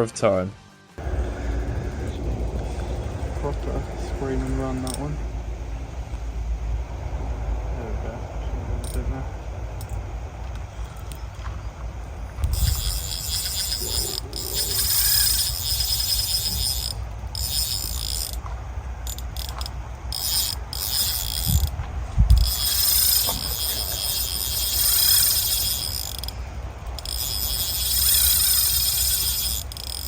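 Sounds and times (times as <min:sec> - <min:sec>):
fishing reel clutch ticking: 0:01.0 - 0:05.2, 0:10.8 - 0:11.5, 0:12.4 - 0:30.0
dull low thumps: 0:21.3 - 0:23.6.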